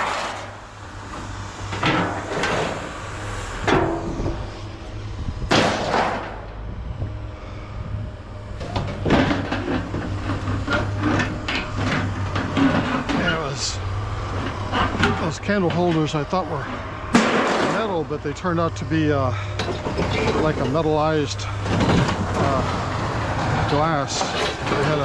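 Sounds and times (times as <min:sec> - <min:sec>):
steady low hum: 0:00.0 - 0:25.0
loud bang: 0:05.4 - 0:06.6.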